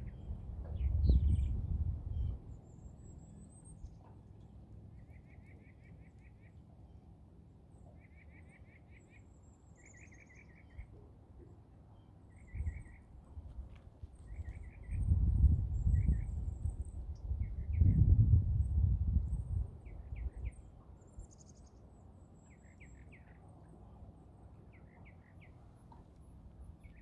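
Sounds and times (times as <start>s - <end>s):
wind buffeting microphone: 0.0s - 2.5s, 12.5s - 20.6s.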